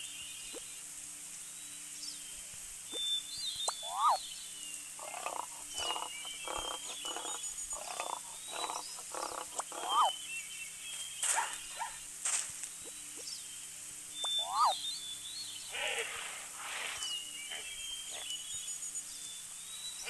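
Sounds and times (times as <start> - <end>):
birds chirping: 1.5 - 20.0
animal calling rapidly: 3.7 - 4.2, 5.0 - 10.2, 14.2 - 14.8.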